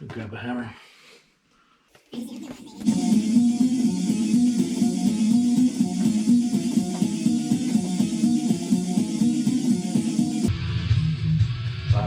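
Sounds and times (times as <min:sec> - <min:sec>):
guitar-led background music: 0:02.9 - 0:12.0.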